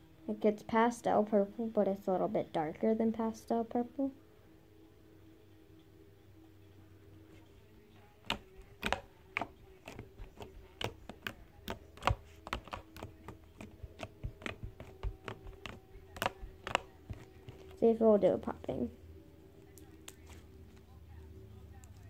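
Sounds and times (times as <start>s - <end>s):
slime clicking and popping: 8.3s - 17.7s.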